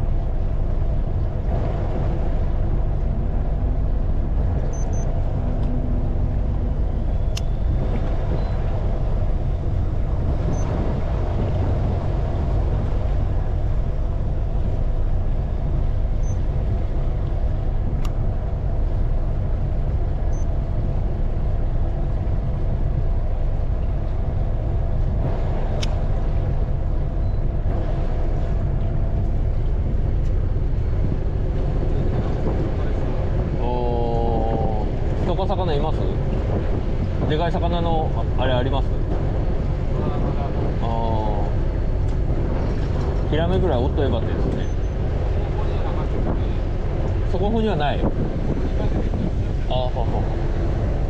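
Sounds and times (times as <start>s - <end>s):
boat engine rumbling: 0.0s - 51.0s
faint sharp clicks: 7.3s - 7.5s, 25.8s - 26.0s.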